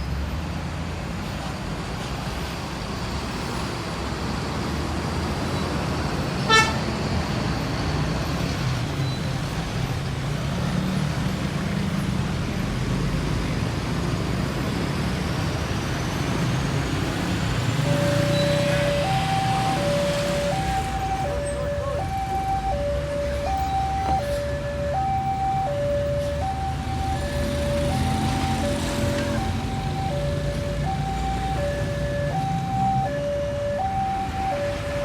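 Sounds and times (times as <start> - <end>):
heavy road traffic rumble: 0.0 - 35.0
bus musical horn: 6.4 - 7.0, 17.8 - 22.2.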